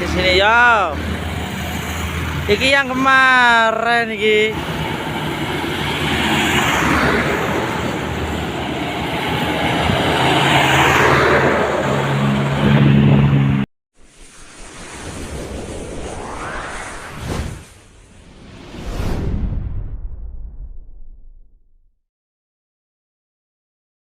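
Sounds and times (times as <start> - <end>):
large truck passing: 4.4 - 13.7.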